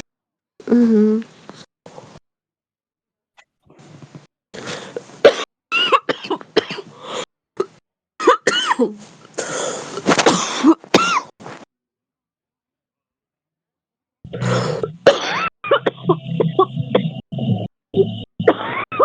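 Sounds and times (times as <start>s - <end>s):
deep chesty coughing: 4.8s - 7.1s, 8.2s - 11.4s, 14.3s - 17.2s.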